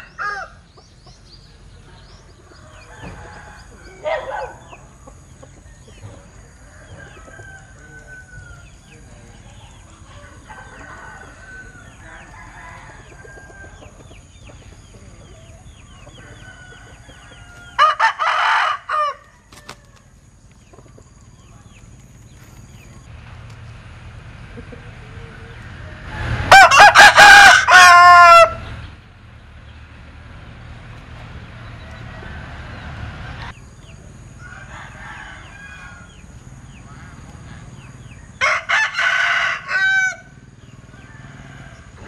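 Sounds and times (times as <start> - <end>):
rooster crowing: 0.0 - 0.6, 2.5 - 4.8, 5.7 - 9.0, 10.1 - 14.1, 16.1 - 20.1, 25.2 - 28.7, 31.7 - 32.8, 34.3 - 36.3, 38.4 - 42.0.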